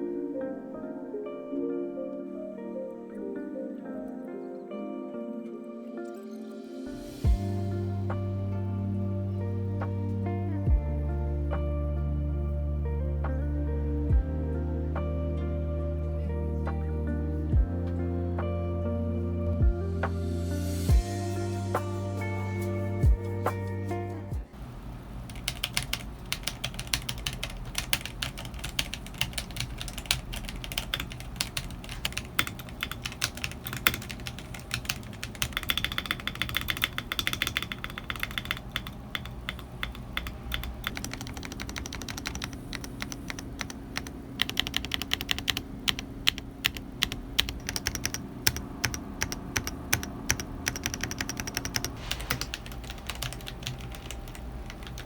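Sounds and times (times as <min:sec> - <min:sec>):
fast typing on mechanical keyboard: 0:25.3 - 0:55.0.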